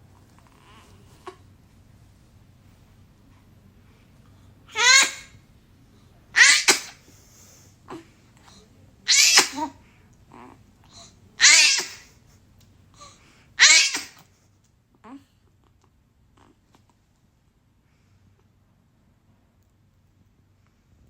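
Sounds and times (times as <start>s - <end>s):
person sneezing: 6.4s - 7.1s, 9.1s - 9.8s, 11.0s - 12.2s, 13.6s - 14.2s.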